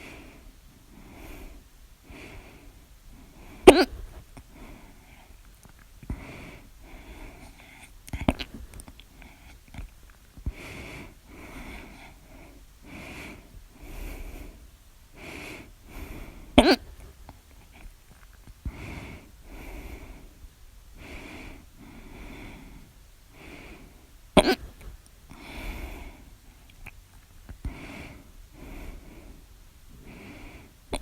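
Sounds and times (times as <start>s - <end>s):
heavy wheezy breathing: 0.0s - 5.4s, 6.1s - 9.6s, 10.4s - 18.0s, 18.6s - 26.7s, 27.6s - 31.0s
woman hiccupping: 3.6s - 4.2s, 8.1s - 8.8s, 16.6s - 17.0s, 24.4s - 24.9s.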